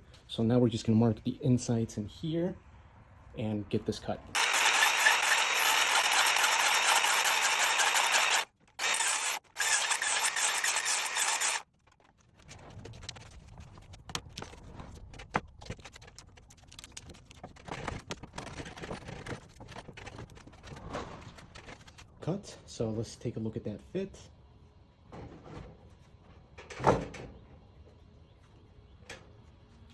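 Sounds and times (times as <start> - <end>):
circular saw cutting wood: 4.4 - 11.6.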